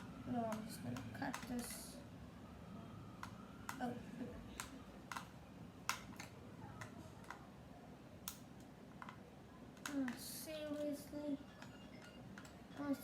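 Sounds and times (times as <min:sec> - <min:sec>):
sharp clicks of plastic toy: 0:00.4 - 0:01.8, 0:04.5 - 0:05.3, 0:05.9 - 0:07.4, 0:08.2 - 0:09.2, 0:09.8 - 0:11.0.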